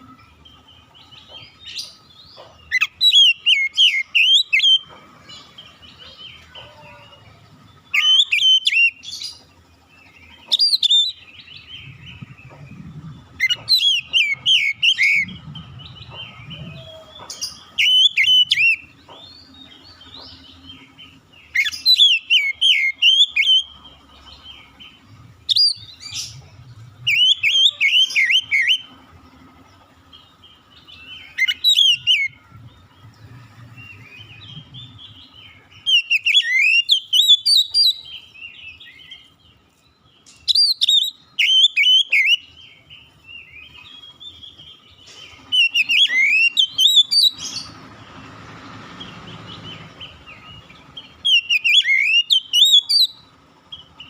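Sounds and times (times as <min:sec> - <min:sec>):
bird singing whistled phrases: 0:07.8 - 0:09.1, 0:10.5 - 0:11.2, 0:13.4 - 0:18.9, 0:21.5 - 0:23.7, 0:25.5 - 0:26.4, 0:27.1 - 0:28.9, 0:31.0 - 0:32.4, 0:33.9 - 0:39.2, 0:40.5 - 0:42.6, 0:45.5 - 0:47.7, 0:50.4 - 0:53.2.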